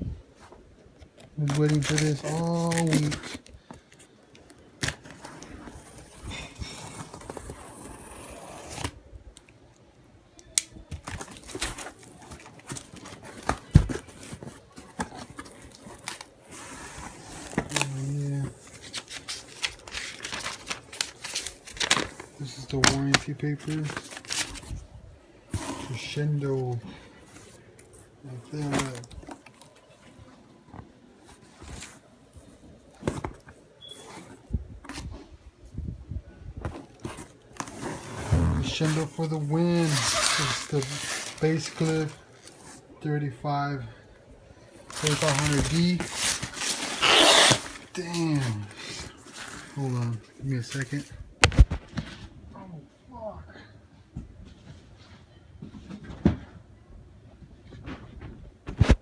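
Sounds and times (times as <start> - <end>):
paper and packaging rustling: 0.4 - 8.9, 10.8 - 24.9, 25.5 - 35.3, 36.6 - 43.8, 44.8 - 52.4
packaging tearing and crinkling: 1.3 - 3.5, 17.4 - 24.7, 38.6 - 42.6, 44.9 - 49.0.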